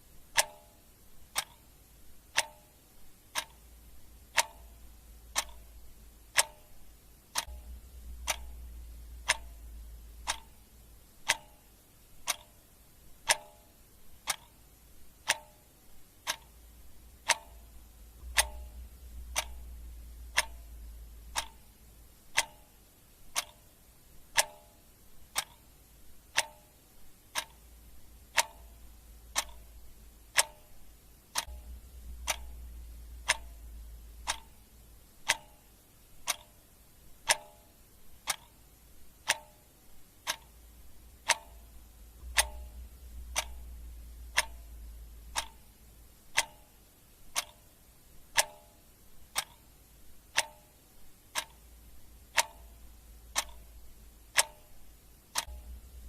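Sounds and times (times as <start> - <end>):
clock ticking: 0.0 - 56.0.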